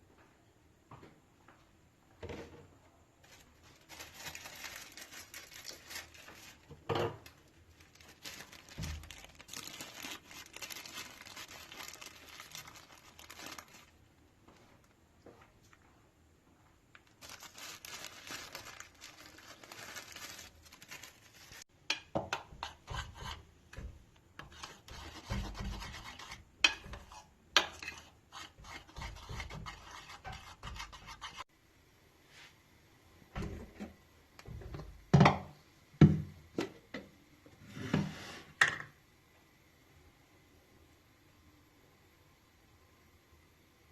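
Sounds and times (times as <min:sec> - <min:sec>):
rubbing and scraping: 0:24.4 - 0:31.5.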